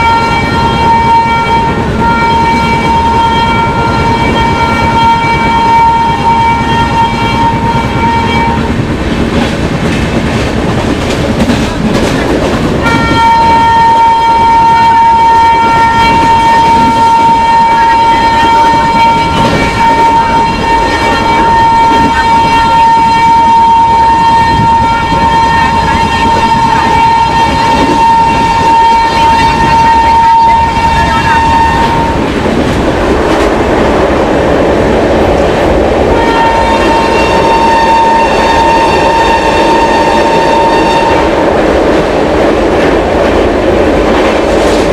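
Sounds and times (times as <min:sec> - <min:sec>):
locomotive horn long blast: 0:00.0 - 0:08.8, 0:12.8 - 0:32.4, 0:36.0 - 0:42.0
low rumble of running train: 0:00.0 - 0:44.9.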